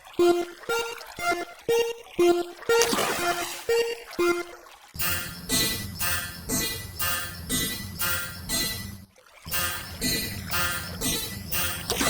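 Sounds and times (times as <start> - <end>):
railroad crossing bell ringing: 5.0 - 12.0.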